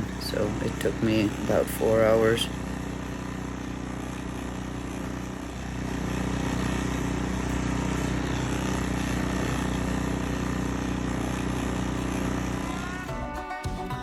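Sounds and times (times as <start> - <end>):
snow blower engine running: 0.0 - 14.0.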